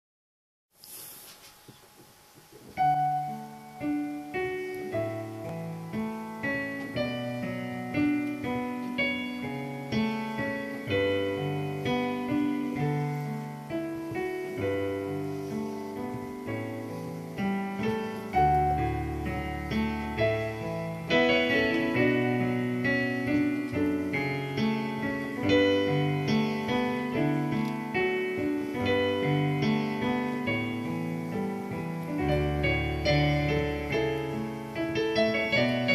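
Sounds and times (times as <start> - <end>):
solo piano: 0.9 - 35.9.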